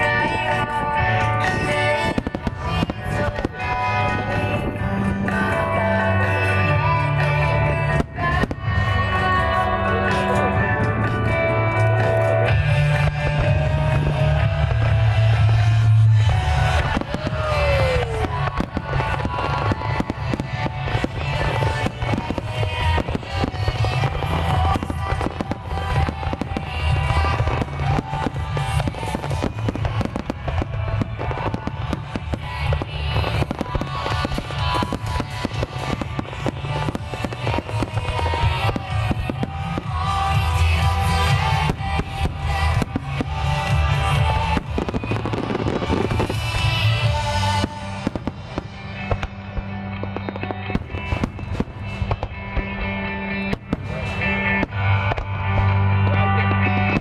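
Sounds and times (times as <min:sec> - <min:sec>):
fireworks bursting and crackling: 0:00.0 - 0:57.0
music playing: 0:00.0 - 0:57.0.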